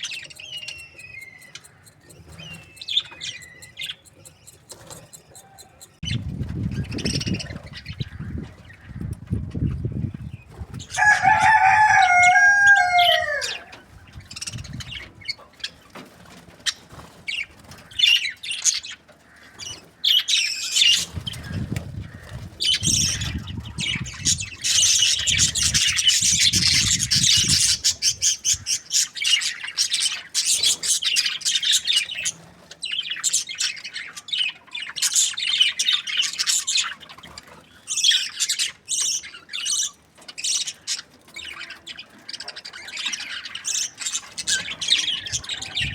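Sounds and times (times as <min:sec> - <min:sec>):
budgies chattering and chirping: 0:00.0 - 0:45.9
rooster crowing: 0:11.0 - 0:13.8.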